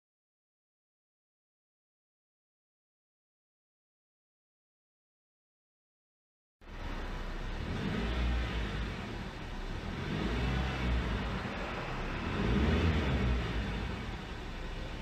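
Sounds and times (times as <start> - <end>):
car engine rumbling: 6.6 - 15.0.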